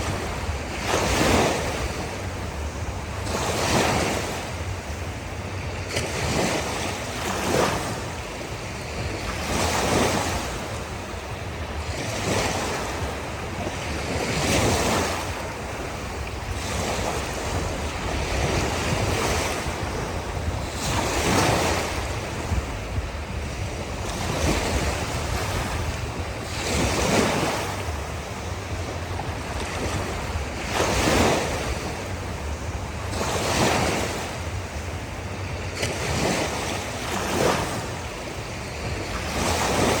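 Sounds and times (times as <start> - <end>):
low rumble of surf: 0.0 - 40.0
ocean waves breaking on shore: 0.0 - 40.0
wind on microphone: 0.0 - 40.0.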